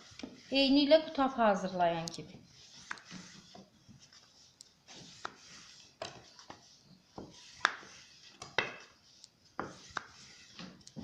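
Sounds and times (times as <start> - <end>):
rolling pin on dough: 0.0 - 1.2, 2.4 - 11.0.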